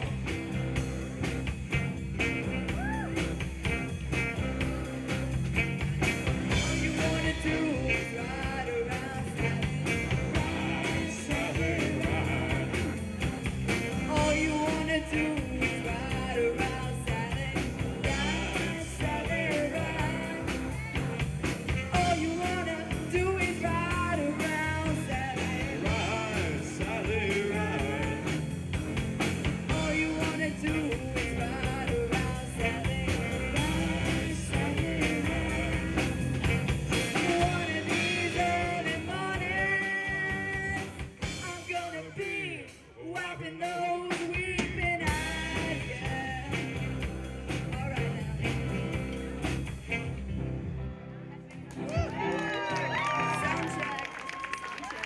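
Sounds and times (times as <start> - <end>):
guitar: 0.0 - 55.0
live rock band playing: 0.0 - 55.0
person singing: 6.5 - 21.2, 21.9 - 28.6, 29.6 - 48.9.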